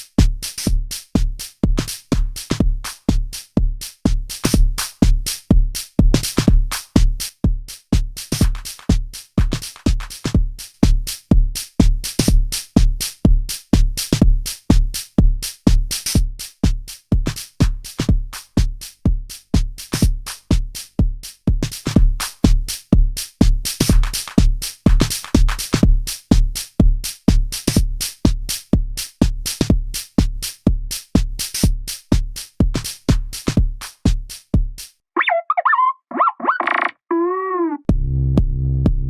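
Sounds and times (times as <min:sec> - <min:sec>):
hi-hat and cymbal hits: 0:00.0 - 0:34.9
deep kick drum: 0:37.9 - 0:39.0.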